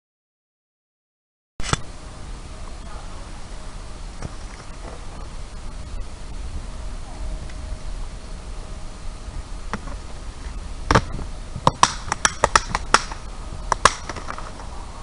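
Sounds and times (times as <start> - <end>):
low background rumble: 1.8 - 15.0.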